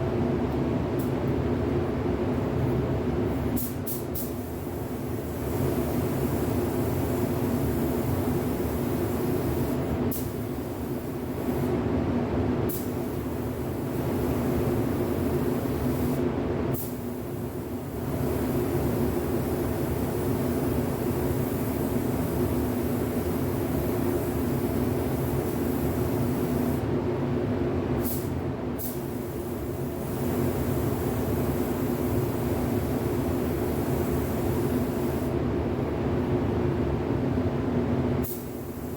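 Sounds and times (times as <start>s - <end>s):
machine drone with low hum: 0.0s - 38.9s
spray booth air rumble: 0.0s - 38.9s
spray gun air hiss: 3.6s - 11.7s, 12.7s - 26.9s, 28.0s - 35.4s, 38.2s - 38.9s.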